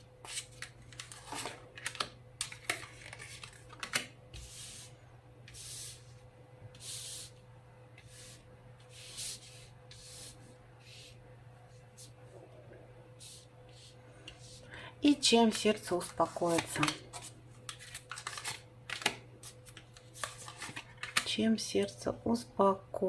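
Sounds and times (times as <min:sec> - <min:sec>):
faint steady hum: 0:00.0 - 0:23.0
cards clicking and tapping: 0:00.3 - 0:04.1, 0:16.5 - 0:21.3.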